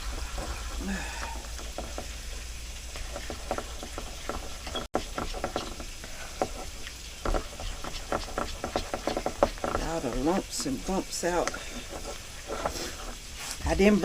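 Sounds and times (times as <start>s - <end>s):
utensil scraping a bowl: 2.9s - 13.8s.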